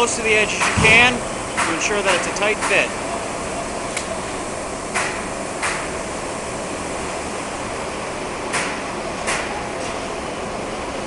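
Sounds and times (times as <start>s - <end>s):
steady hiss: 0.0s - 11.0s
clamp knocks: 0.6s - 2.8s.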